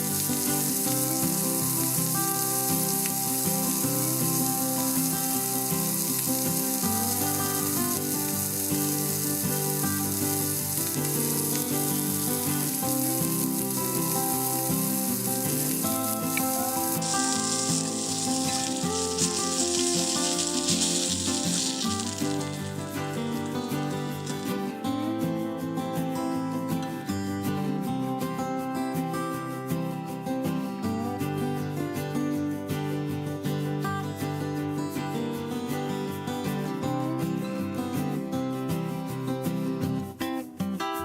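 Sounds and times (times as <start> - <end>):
fish sizzling in oil: 0.0 - 24.7
background music: 0.0 - 33.8.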